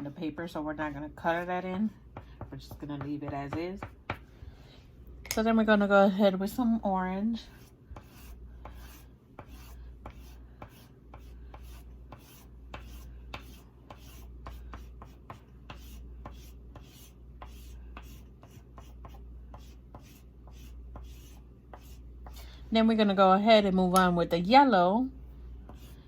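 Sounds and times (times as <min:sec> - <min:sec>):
low steady hum: 0:00.0 - 0:26.0
oil pastel scratching on paper: 0:07.4 - 0:22.4, 0:25.7 - 0:26.0.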